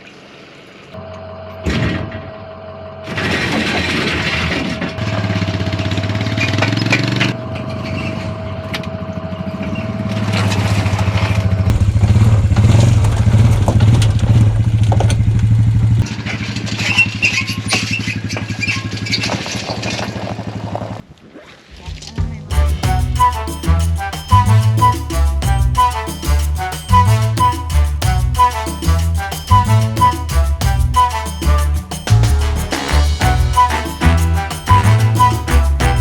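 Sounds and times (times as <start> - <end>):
vehicle engine running: 5.0 - 7.6, 8.3 - 19.5.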